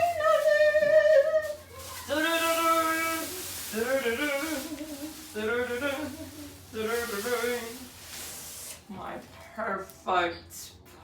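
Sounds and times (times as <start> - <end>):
woman singing: 0.0 - 8.0.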